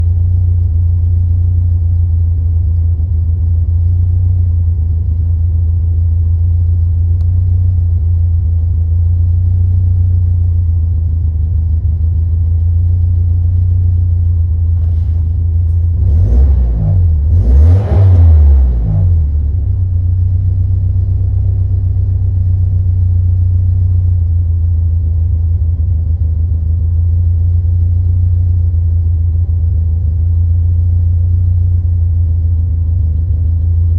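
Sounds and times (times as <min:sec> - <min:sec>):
car engine idling roughly: 0:00.0 - 0:16.3, 0:19.3 - 0:33.9
car engine revving: 0:14.7 - 0:21.7.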